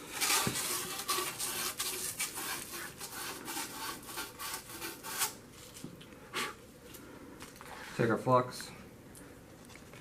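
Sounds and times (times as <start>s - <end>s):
sandcloth rubbing on copper pipe: 0.0s - 5.4s.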